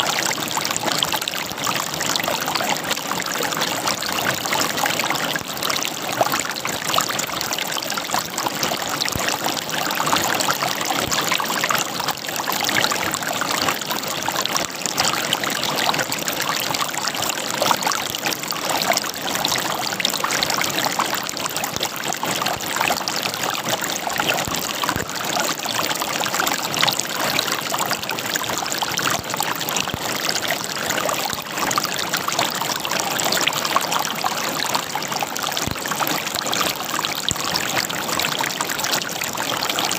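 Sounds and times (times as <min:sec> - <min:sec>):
river water gurgling over rocks: 0:00.0 - 0:39.9.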